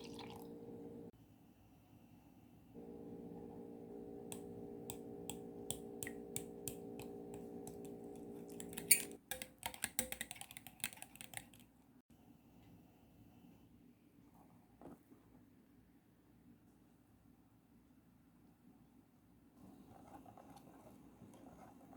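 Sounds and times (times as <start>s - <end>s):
steady low hum: 0.0s - 1.1s, 2.8s - 9.2s
utensil clicking against bowl: 4.3s - 11.7s.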